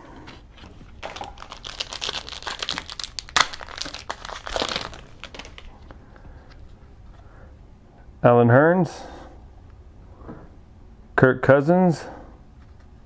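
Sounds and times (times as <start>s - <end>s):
plastic wrapper crinkling: 0.5s - 6.8s.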